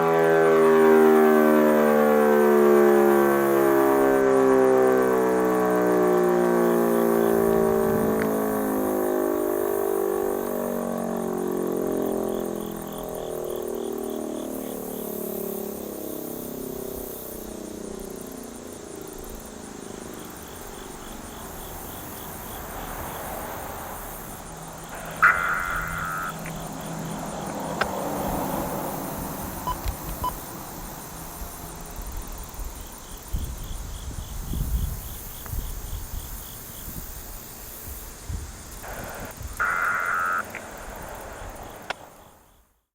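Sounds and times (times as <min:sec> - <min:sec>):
rotating siren winding down: 0:00.0 - 0:12.7, 0:24.9 - 0:30.4
insects chirping: 0:00.1 - 0:42.9
low wind rumble: 0:19.2 - 0:39.9, 0:40.5 - 0:42.5
short high tone: 0:25.0 - 0:26.5.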